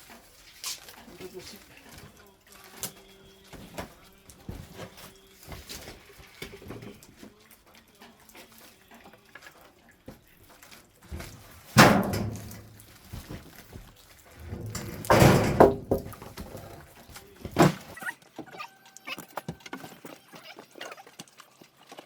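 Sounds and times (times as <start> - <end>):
heavy wooden thunks: 11.2 - 13.8, 14.4 - 16.8.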